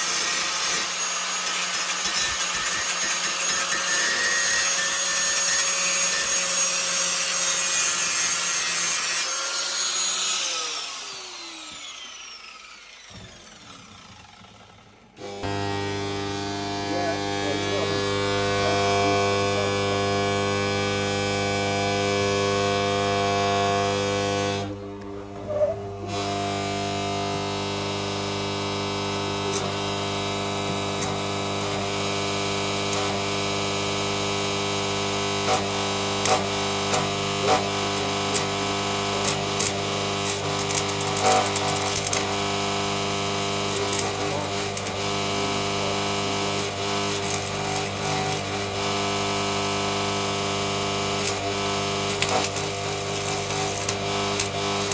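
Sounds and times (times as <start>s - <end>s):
welding arc buzzing and crackling: 0.0s - 54.9s.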